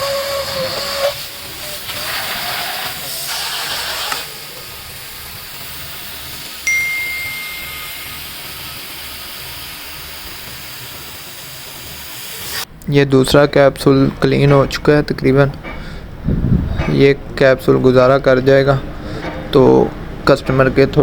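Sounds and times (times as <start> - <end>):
water spray hissing: 0.0 - 12.7
metallic ding: 6.7 - 8.3.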